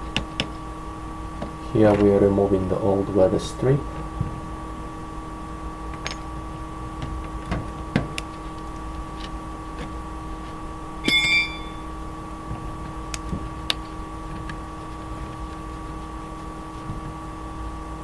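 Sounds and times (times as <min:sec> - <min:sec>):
steady hum: 0:00.0 - 0:18.0
brief high squeal: 0:11.0 - 0:11.9.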